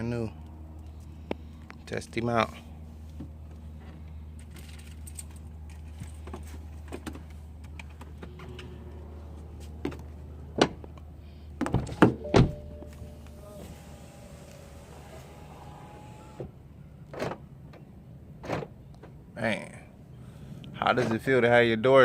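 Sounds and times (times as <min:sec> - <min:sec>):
low steady hum: 0:00.0 - 0:17.0.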